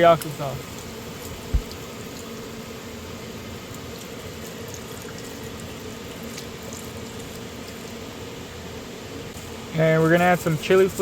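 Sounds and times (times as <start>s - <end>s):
chicken bubbling in a pan: 1.2s - 9.0s.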